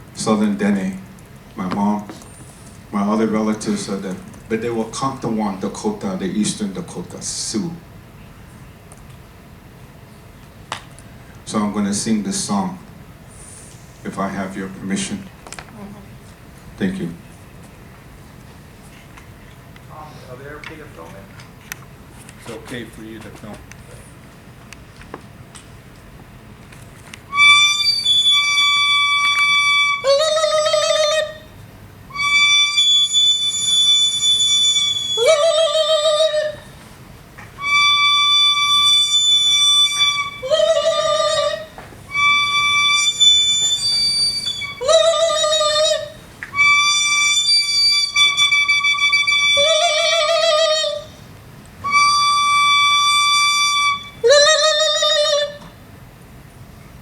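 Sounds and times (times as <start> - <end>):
wind instrument two-note phrase: 37.6 - 40.6, 42.1 - 44.9.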